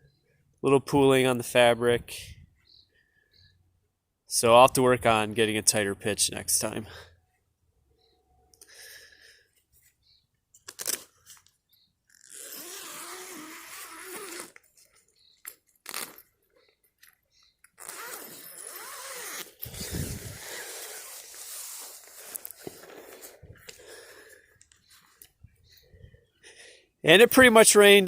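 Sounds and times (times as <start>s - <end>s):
tent fabric rustling: 17.8s - 23.5s.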